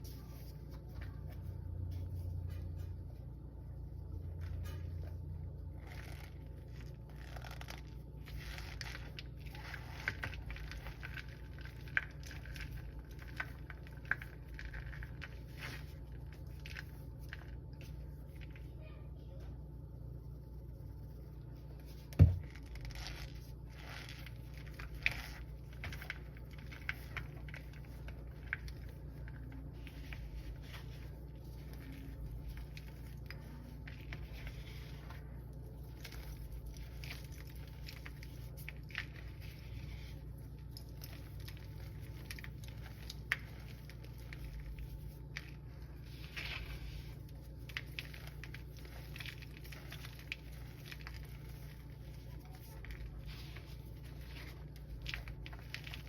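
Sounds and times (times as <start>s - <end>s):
low hum: 0.0s - 56.0s
chalk crunching and squeaking: 5.8s - 18.0s, 22.6s - 56.0s.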